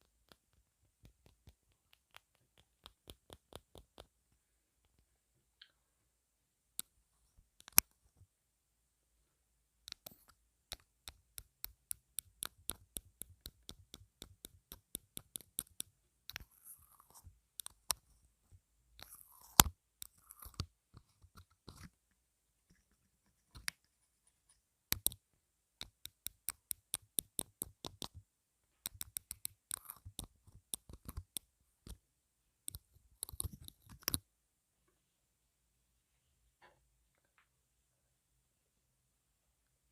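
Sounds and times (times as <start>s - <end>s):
sharp taps and clicks on microphone: 0.0s - 4.1s, 28.8s - 32.0s.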